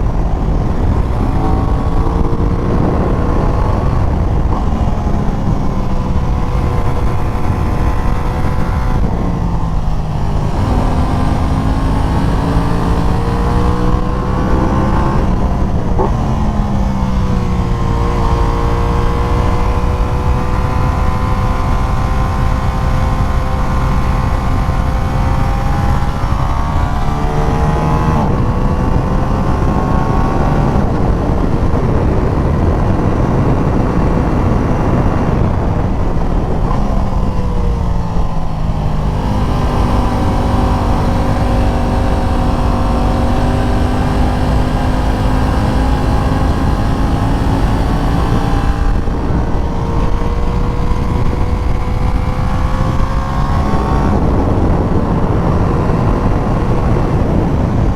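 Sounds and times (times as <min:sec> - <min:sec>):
motorcycle engine revving: 0:00.0 - 0:57.9
wind noise: 0:00.0 - 0:57.9.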